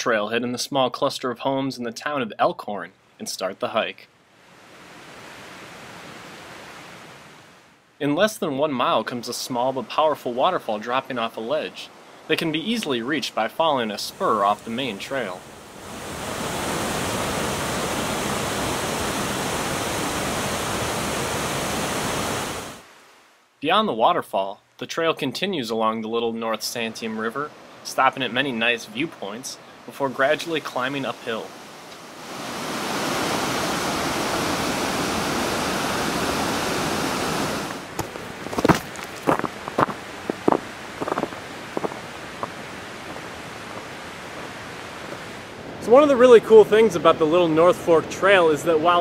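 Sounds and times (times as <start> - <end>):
waterfall rushing: 11.2 - 23.2, 27.5 - 46.7.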